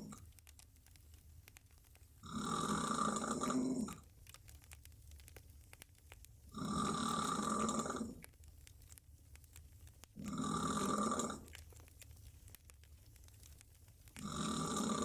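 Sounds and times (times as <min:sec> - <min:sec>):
woman snoring loudly: 0:02.3 - 0:03.9, 0:06.6 - 0:08.2, 0:10.2 - 0:11.4, 0:14.2 - 0:15.0.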